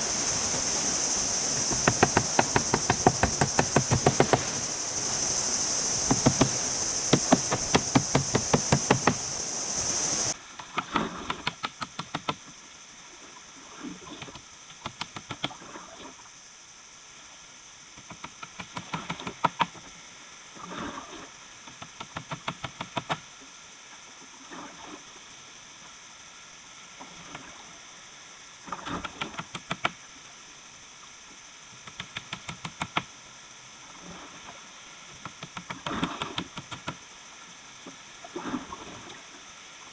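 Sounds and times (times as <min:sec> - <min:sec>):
insects shrilling: 0:00.0 - 0:10.4
knocking and tapping on wood: 0:00.5 - 0:10.4.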